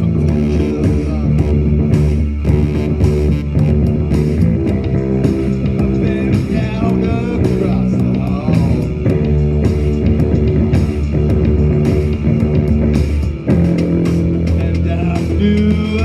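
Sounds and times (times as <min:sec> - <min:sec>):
bending guitar lead line: 0:00.0 - 0:16.0
rock guitar and bass: 0:00.0 - 0:16.0.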